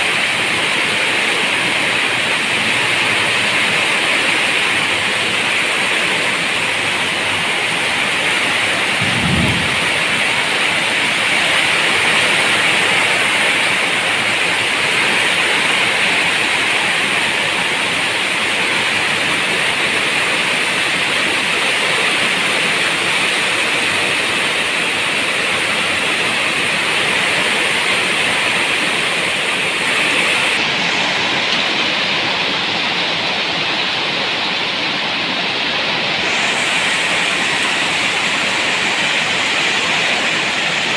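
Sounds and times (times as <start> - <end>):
heavy rain: 0.0 - 40.9
low rumble: 9.0 - 10.9.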